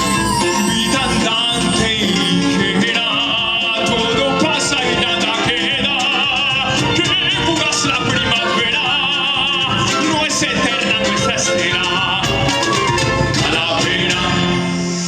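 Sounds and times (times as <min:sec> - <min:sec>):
high wavering vibrato melody: 0:00.0 - 0:03.0
folk band playing live: 0:00.0 - 0:15.0.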